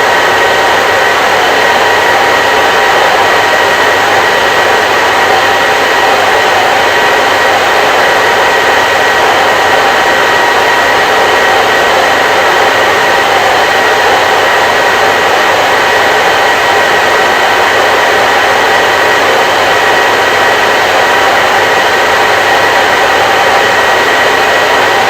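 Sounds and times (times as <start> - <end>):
hair dryer running: 0.0 - 25.0.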